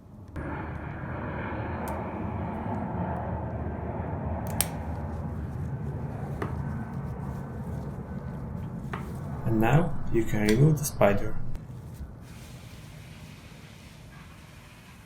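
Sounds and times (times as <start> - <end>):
steady hiss: 12.2 - 15.0.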